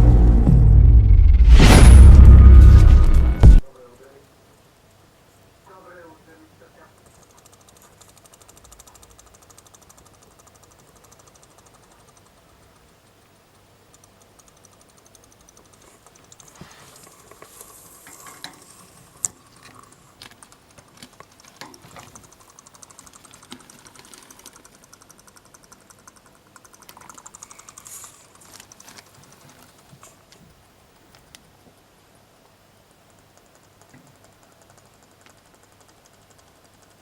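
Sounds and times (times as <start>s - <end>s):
guinea pig chattering teeth: 6.8s - 30.3s, 32.8s - 37.0s.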